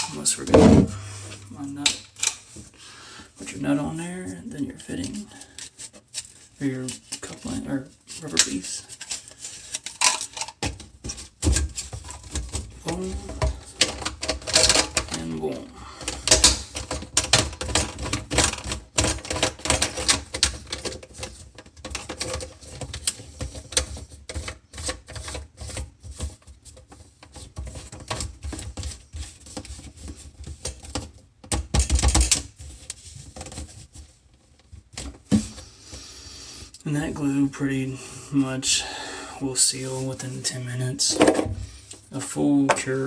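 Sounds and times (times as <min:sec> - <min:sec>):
plastic clatter: 0:08.3 - 0:15.4, 0:16.0 - 0:35.6
plastic pipe fittings clicking: 0:16.0 - 0:20.9.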